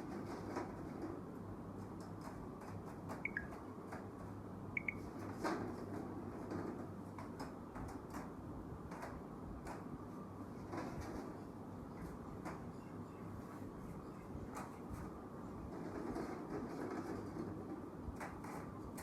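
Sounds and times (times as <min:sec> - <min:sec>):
steady background noise: 0:00.0 - 0:19.0
short high chirps: 0:03.3 - 0:03.5, 0:04.8 - 0:05.0.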